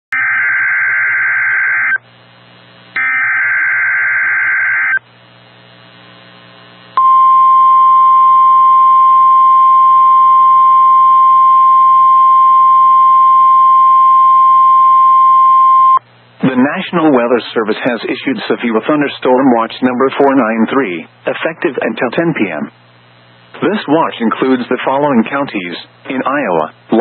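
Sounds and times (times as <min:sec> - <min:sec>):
radio hiss: 0:05.1 - 0:07.0, 0:15.6 - 0:27.0
steady warning alarm tone: 0:07.0 - 0:16.0.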